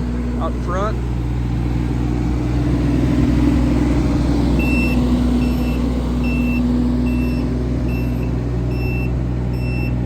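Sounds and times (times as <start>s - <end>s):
diesel engine running: 0.0s - 10.0s
travel alarm high beeps: 4.6s - 10.0s.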